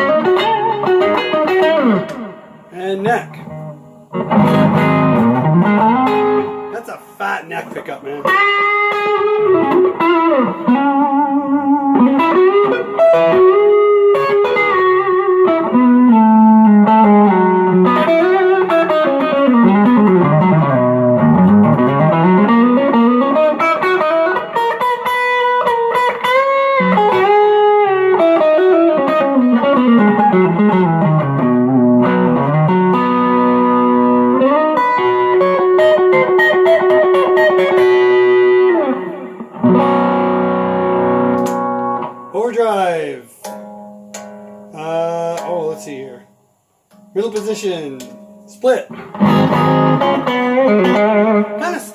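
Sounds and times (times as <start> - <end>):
electric guitar melody: 0.0 - 51.9.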